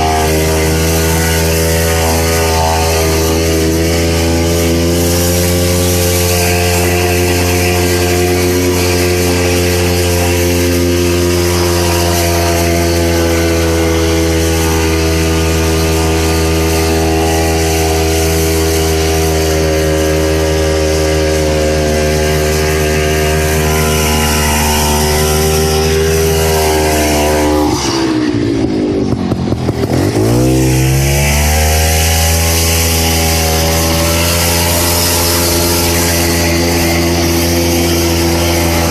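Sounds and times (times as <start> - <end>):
snowmobile engine running: 0.0 - 38.9.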